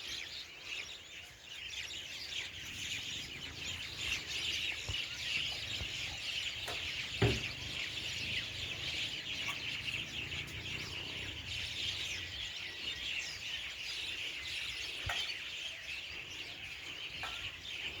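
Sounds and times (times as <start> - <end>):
many birds chirping: 0.0 - 18.0
low thump: 7.2 - 7.8.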